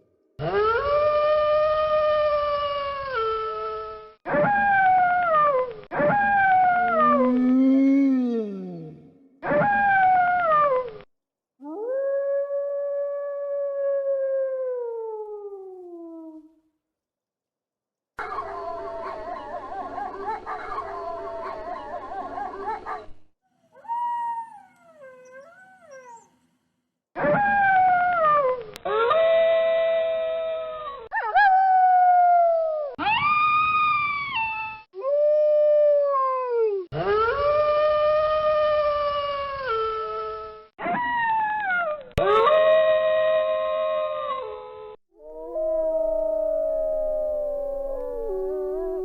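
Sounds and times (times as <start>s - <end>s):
wolves howling: 6.0s - 9.0s, 45.3s - 49.0s.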